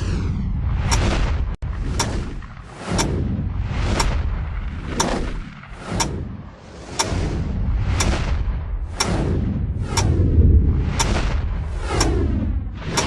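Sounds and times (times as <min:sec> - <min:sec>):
low rumble: 0:00.0 - 0:13.0
deep boom with sharp crack: 0:07.5 - 0:11.8.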